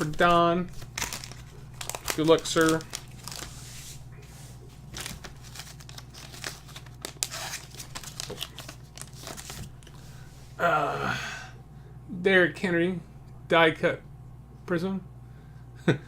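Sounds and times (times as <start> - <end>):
wrapper crinkling and tearing: 0.0 - 3.8, 4.9 - 9.9
low steady hum: 0.0 - 16.0.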